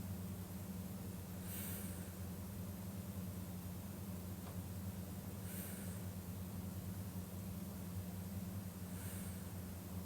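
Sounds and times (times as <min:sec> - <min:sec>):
low hum with faint hiss: 0:00.0 - 0:10.0
person breathing in sleep: 0:01.4 - 0:02.2, 0:05.4 - 0:06.1, 0:08.9 - 0:09.6.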